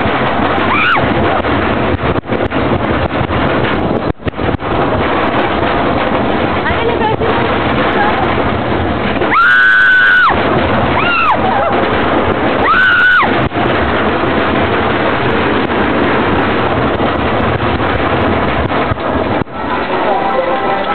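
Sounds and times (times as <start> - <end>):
roller coaster rushing roar: 0.0 - 20.9
riders screaming: 0.6 - 1.1, 9.2 - 11.8, 12.6 - 13.3.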